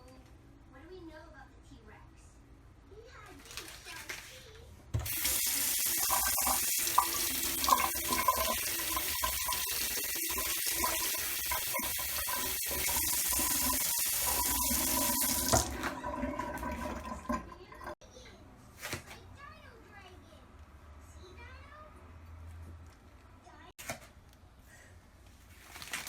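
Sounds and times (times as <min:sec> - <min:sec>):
tap running into a sink: 0:05.0 - 0:17.9.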